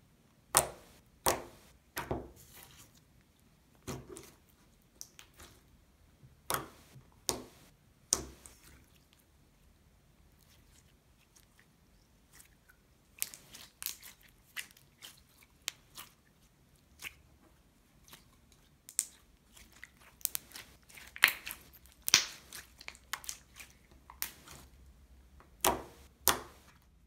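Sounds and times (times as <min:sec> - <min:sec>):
slime clicking and popping: 0:20.2 - 0:24.5.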